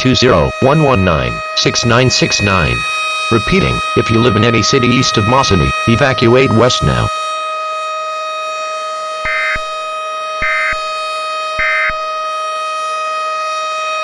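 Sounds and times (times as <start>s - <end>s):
data tone bursts: 0.0s - 7.1s
steady electronic tone: 0.0s - 7.2s.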